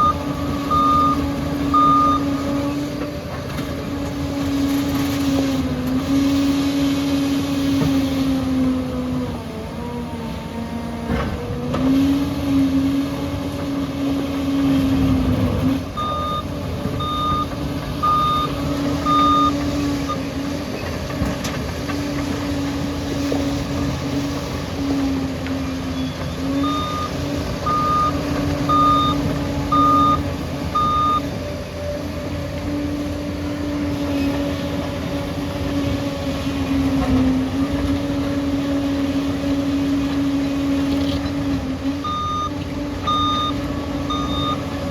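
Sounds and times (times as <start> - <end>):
reverse alarm beeps: 0.0 - 2.3, 16.0 - 20.2, 26.0 - 31.3, 42.0 - 44.8
bulldozer diesel engine running: 0.0 - 44.9.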